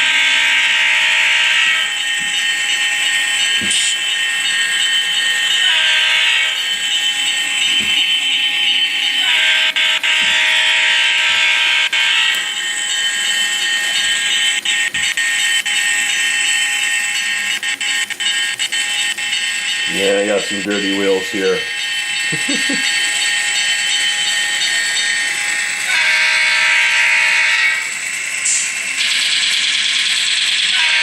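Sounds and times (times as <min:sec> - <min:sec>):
diesel engine through small speaker: 0:12.2 - 0:26.0, 0:26.6 - 0:29.3
train horn blasts: 0:25.9 - 0:27.8.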